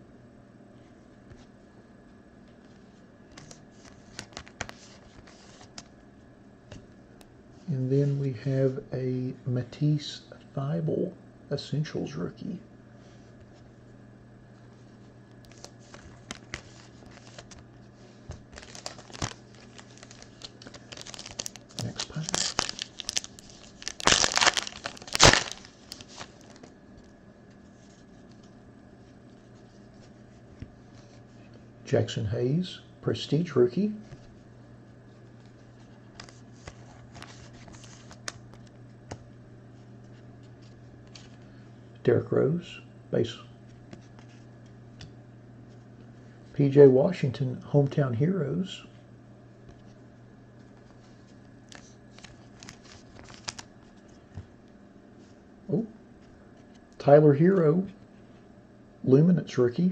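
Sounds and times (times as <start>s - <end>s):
faint steady hum: 0.0s - 59.9s
cards rustling and clicking: 3.4s - 5.9s, 15.4s - 17.6s, 18.2s - 26.7s, 35.4s - 39.2s, 50.8s - 54.5s
card wrapper crinkling: 15.5s - 17.6s, 18.3s - 26.8s, 36.1s - 38.7s, 50.8s - 54.3s.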